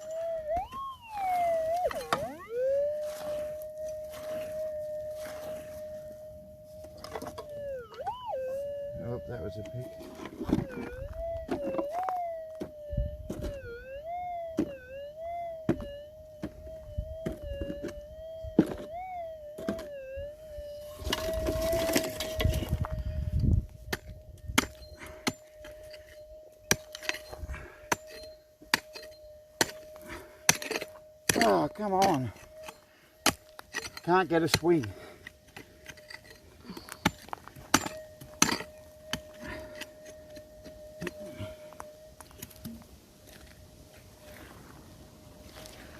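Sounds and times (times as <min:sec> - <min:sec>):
metal detector tone: 0:00.0 - 0:44.6
pick striking hard ground: 0:23.9 - 0:34.9.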